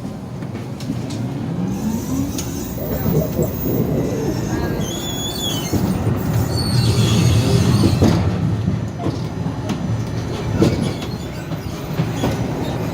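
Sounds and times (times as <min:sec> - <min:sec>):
tram running gear rumble: 0:00.0 - 0:12.9
wheels clacking over rail joints: 0:00.4 - 0:12.9
high wheel squeal: 0:01.7 - 0:08.2, 0:10.5 - 0:12.9.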